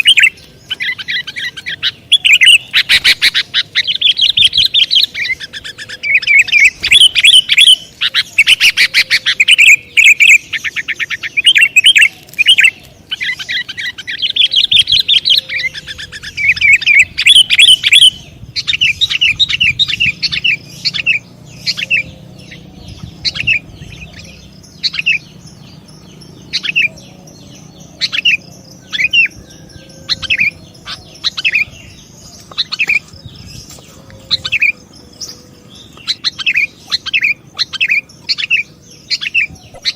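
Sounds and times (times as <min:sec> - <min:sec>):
bulbul chirping: 0:00.0 - 0:29.4.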